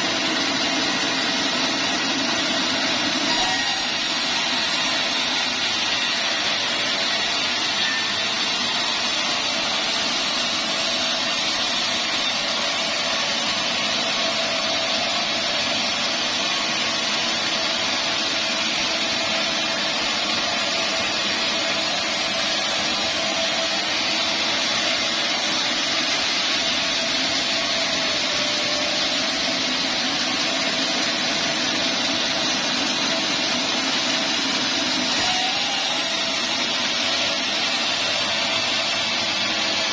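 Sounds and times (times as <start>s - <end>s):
band sawmill sawing wood: 0.0s - 39.9s.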